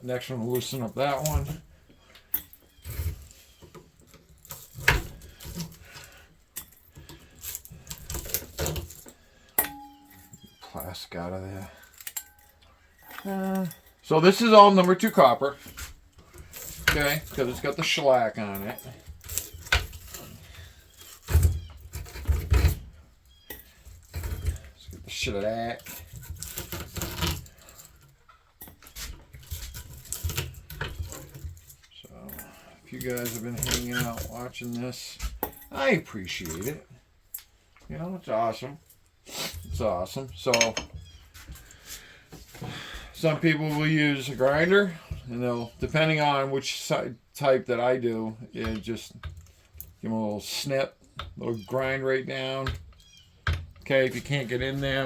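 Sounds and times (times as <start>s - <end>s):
metal tools clicking and scraping: 0.5s - 10.9s, 11.6s - 37.5s, 40.4s - 41.8s.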